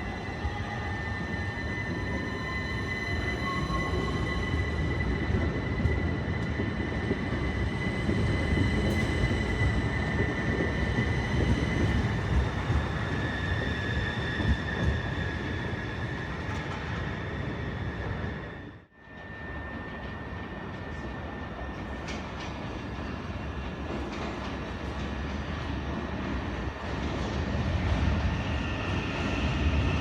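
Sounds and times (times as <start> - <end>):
high-pitched train squealing: 0.0 - 26.7
train running rumble: 2.9 - 18.2.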